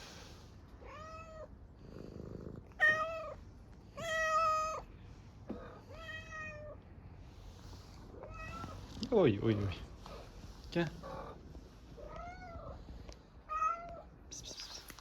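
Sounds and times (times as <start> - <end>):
cat meowing: 0.8 - 1.5, 4.0 - 4.9, 5.7 - 6.8, 8.2 - 8.8, 12.0 - 12.8, 13.5 - 14.1
low purr-like rumble: 1.2 - 4.6.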